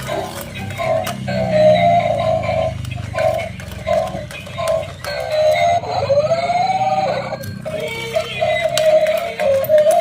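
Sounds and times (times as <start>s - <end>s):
synthetic voice-like melody: 5.3s - 10.0s.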